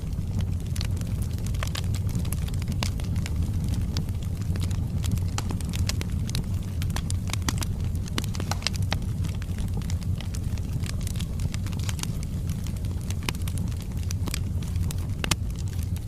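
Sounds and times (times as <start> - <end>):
fire roaring: 0.0 - 16.0
logs crackling and popping: 0.0 - 16.0.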